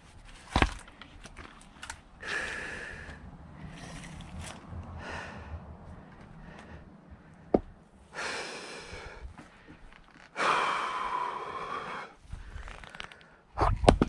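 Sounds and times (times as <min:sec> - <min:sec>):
person breathing hard: 0:02.2 - 0:04.2, 0:04.8 - 0:13.6.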